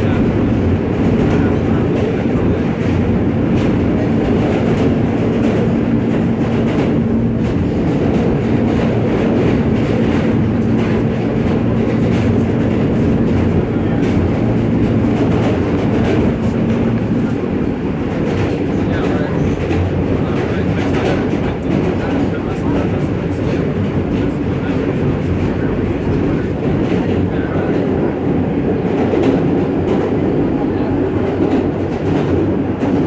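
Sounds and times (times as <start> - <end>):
subway train rumbling: 0.0 - 33.0.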